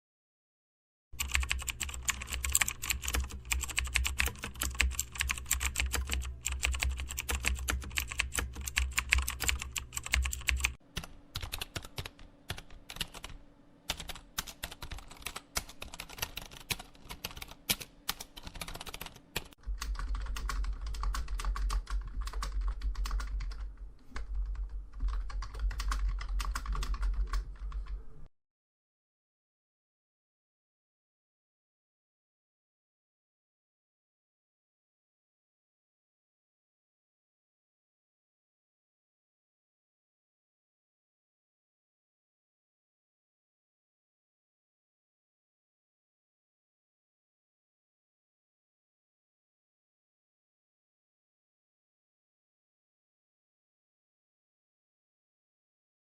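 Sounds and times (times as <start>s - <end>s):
rapid keyboard typing: 1.2s - 28.0s.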